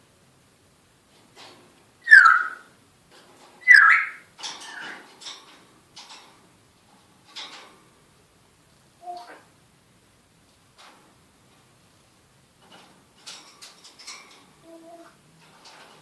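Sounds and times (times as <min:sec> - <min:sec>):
parrot whistling: 0:02.0 - 0:02.6, 0:03.6 - 0:04.2.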